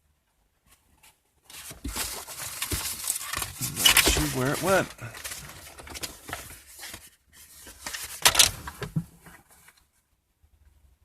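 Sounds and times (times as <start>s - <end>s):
car parts rustling and clinking: 1.5s - 7.0s, 7.7s - 9.4s.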